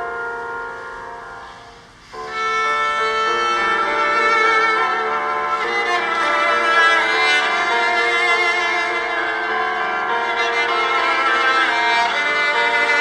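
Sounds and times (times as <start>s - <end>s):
musical accompaniment: 0.0s - 13.0s
violin sustained notes: 0.0s - 13.0s.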